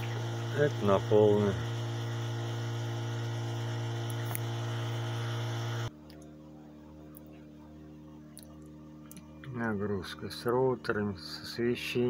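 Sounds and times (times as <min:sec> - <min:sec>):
electric pump humming: 0:00.0 - 0:12.0
faint hum: 0:00.0 - 0:12.0.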